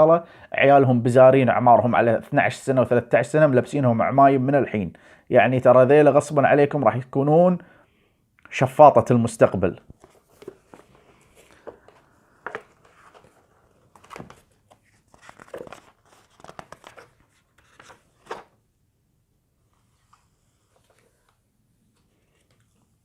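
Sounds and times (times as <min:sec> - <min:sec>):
book pages rustling: 0:09.9 - 0:18.6, 0:19.6 - 0:23.0.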